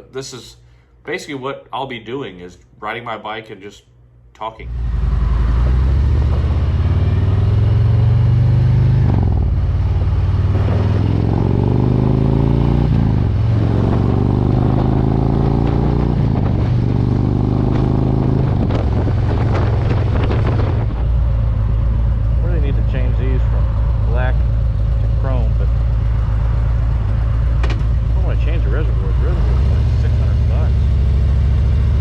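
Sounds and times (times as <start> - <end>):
motorcycle engine accelerating: 4.6 - 32.0.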